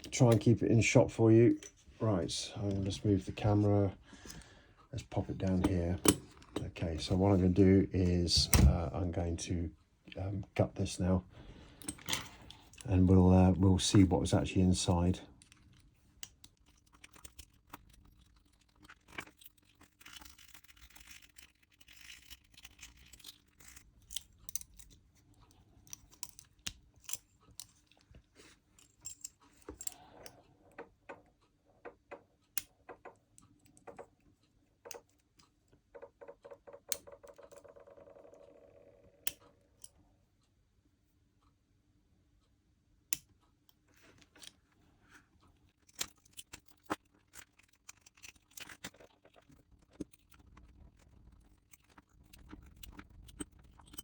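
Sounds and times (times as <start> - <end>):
metallic lock clicks and rattles: 11.8 - 12.8.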